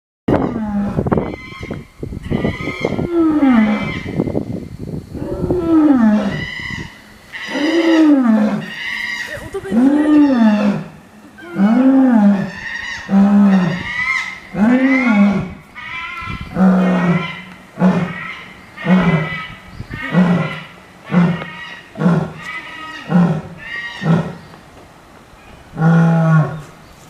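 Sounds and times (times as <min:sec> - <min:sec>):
lioness roaring: 0:02.3 - 0:04.1, 0:05.2 - 0:06.5, 0:07.4 - 0:24.4, 0:25.8 - 0:26.6.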